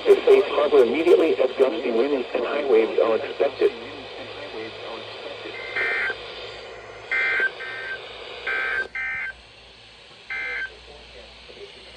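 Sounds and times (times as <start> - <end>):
radio hum and hiss: 0.0 - 11.9
buzzy two-tone digital bursts: 5.5 - 6.2, 6.8 - 9.4, 10.3 - 10.8.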